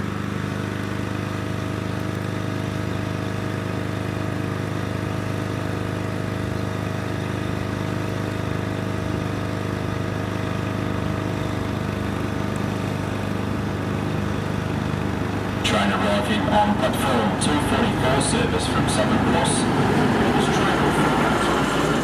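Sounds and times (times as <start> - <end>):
train diesel engine idling: 5.7 - 22.0.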